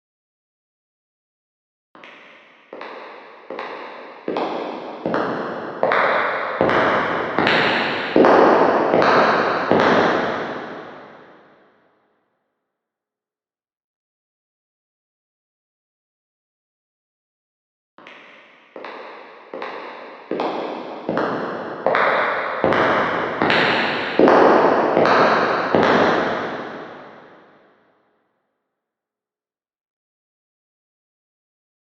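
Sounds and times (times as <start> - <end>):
echoing footsteps: 2.6 - 11.4, 18.7 - 27.3.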